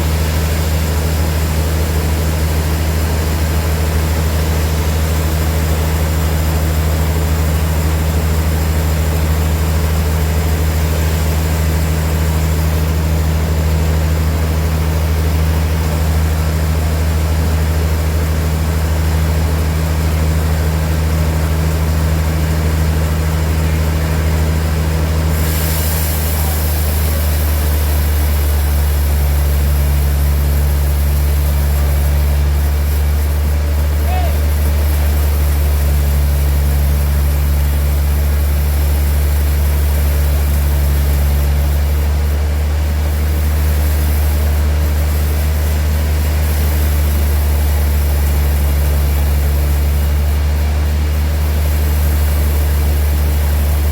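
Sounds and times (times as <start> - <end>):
sawmill machinery humming: 0.0 - 53.9
high hiss: 25.2 - 33.3.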